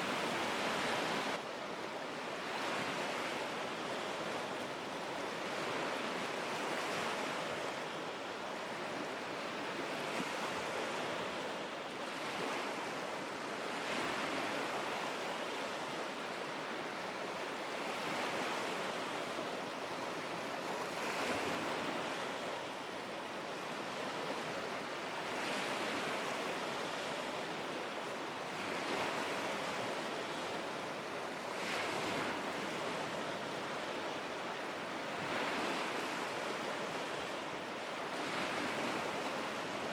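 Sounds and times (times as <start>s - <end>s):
waves washing onto shore: 0.0s - 39.9s.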